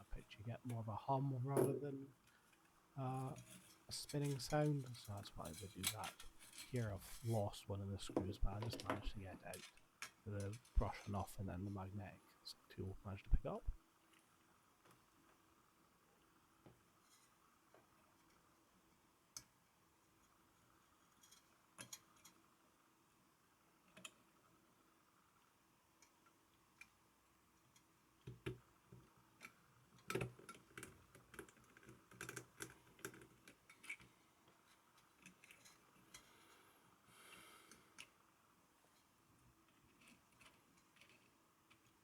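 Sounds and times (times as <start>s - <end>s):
small tools clicking and tapping: 8.2s - 10.8s, 21.1s - 22.4s, 27.6s - 36.6s, 39.7s - 42.0s.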